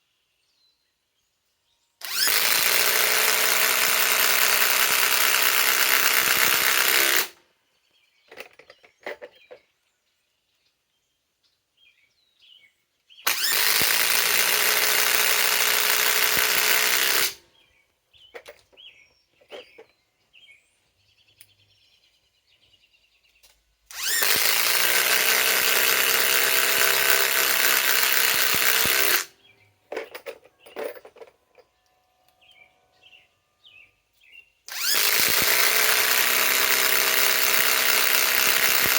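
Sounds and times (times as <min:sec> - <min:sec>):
impact wrench hammering screws: 0:02.0 - 0:07.4, 0:13.3 - 0:17.4, 0:18.3 - 0:18.7, 0:19.4 - 0:19.9, 0:23.9 - 0:31.4, 0:34.7 - 0:38.9.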